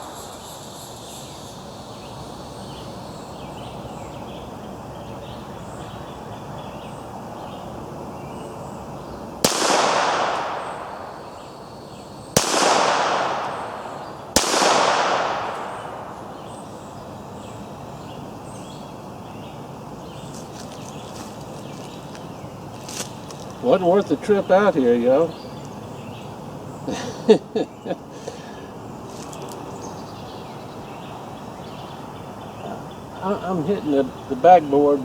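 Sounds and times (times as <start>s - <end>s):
pistol shots with echo: 9.4s - 11.6s, 12.4s - 16.9s.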